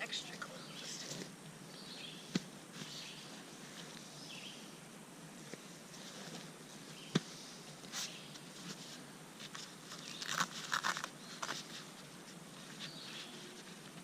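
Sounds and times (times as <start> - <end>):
bag rustling and scraping: 5.4 - 13.9.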